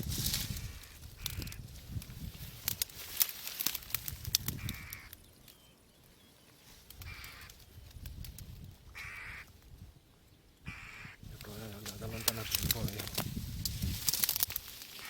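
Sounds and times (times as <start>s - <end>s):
jackdaws calling: 0.4s - 1.7s, 3.3s - 5.8s, 6.4s - 7.7s, 8.9s - 9.6s, 10.6s - 13.1s.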